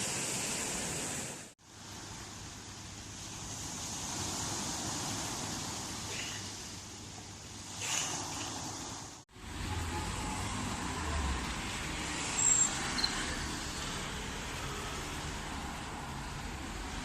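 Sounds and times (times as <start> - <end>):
road traffic noise: 1.7 - 17.0
passing vehicle rumble: 9.3 - 17.0
short high squeak: 12.3 - 13.3.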